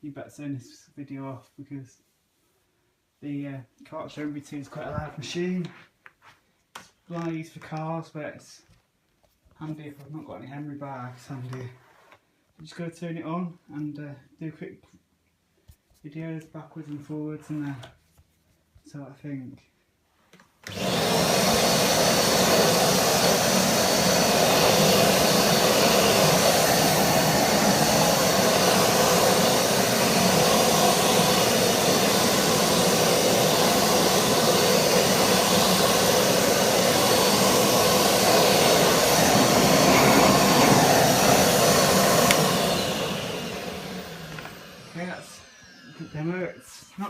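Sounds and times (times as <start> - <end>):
vacuum cleaner on carpet: 20.6 - 47.0.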